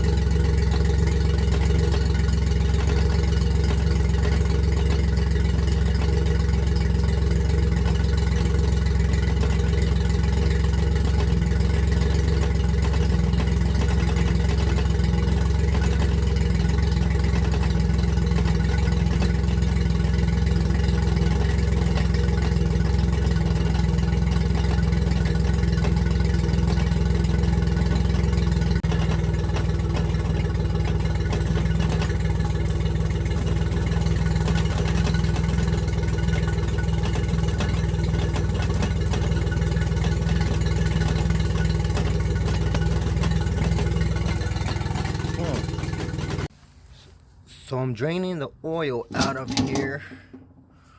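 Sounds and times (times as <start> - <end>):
outboard motor running: 0.0 - 46.5, 49.2 - 50.9.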